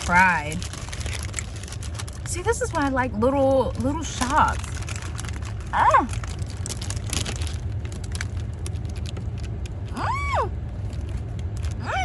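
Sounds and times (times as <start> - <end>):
low hum: 0.0 - 12.0
crunching clicks: 4.5 - 10.0
person chewing sandwich: 4.7 - 11.9.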